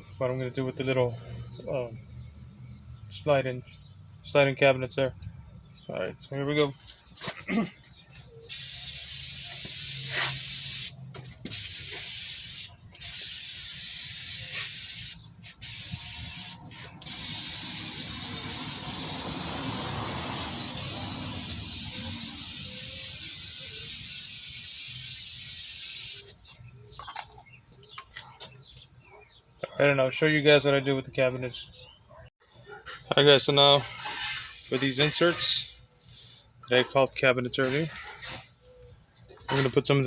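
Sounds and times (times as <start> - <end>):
spray hiss: 8.5 - 26.3.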